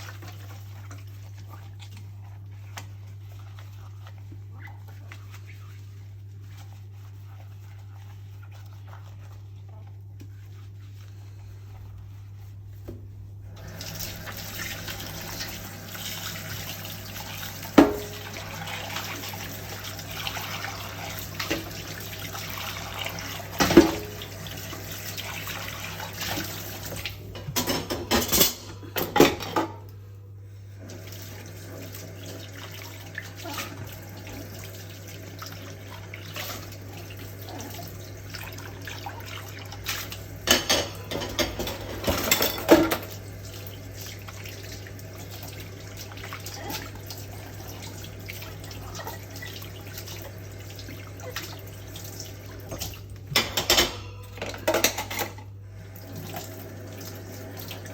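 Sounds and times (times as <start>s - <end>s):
low steady hum: 0.0s - 57.9s
tap running into sink: 17.7s - 18.3s
dishes and cutlery clinking: 27.3s - 29.8s, 40.4s - 43.1s, 53.3s - 55.5s.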